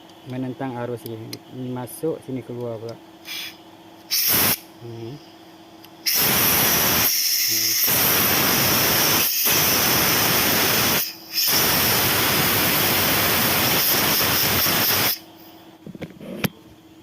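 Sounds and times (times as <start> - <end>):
compressed air hissing: 3.2 - 4.7, 6.0 - 15.5.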